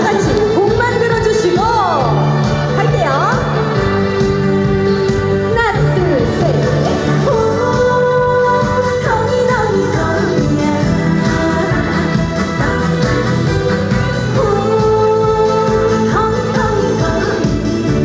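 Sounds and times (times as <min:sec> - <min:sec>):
pop song over loudspeakers: 0:00.0 - 0:18.0.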